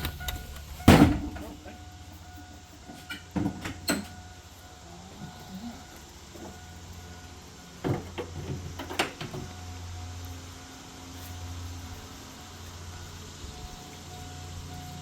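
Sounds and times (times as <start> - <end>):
metal clunks and rattles: 0.0 - 1.6, 2.8 - 4.3, 7.8 - 9.5.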